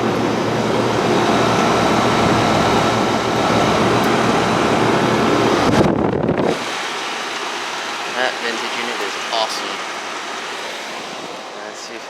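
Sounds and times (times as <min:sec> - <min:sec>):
condenser fan air rushing: 0:00.0 - 0:12.0
low steady hum: 0:00.0 - 0:12.0.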